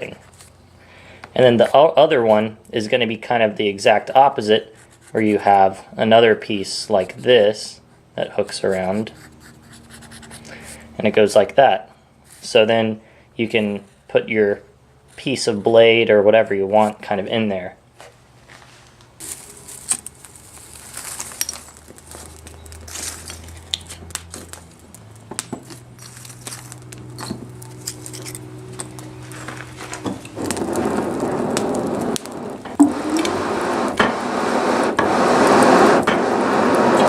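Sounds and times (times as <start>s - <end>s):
forge fire roaring: 19.2s - 37.0s
metal clinking and knocking: 25.2s - 29.0s.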